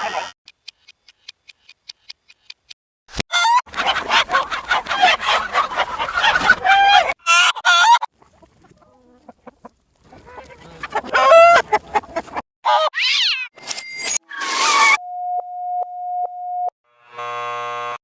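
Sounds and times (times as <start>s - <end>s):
reversed chicken clucking effects: 0.0s - 13.0s.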